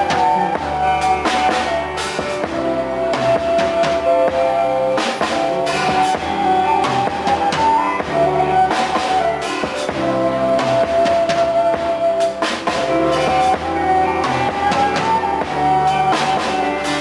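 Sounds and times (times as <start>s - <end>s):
drum kit beat: 0.0s - 17.0s
electric guitar: 0.0s - 17.0s
sustained melody line: 0.0s - 17.0s.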